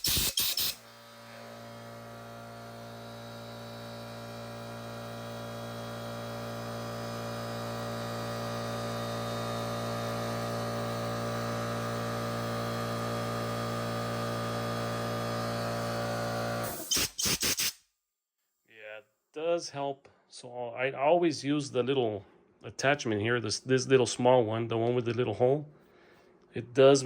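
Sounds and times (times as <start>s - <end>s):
short sharp noise bursts: 0.0s - 0.8s, 16.6s - 17.9s
air compressor motor humming: 0.0s - 17.7s.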